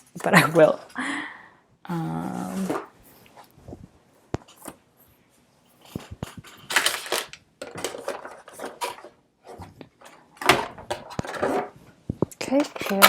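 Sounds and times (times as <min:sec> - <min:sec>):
packaging crinkling and rustling: 0:05.8 - 0:09.2.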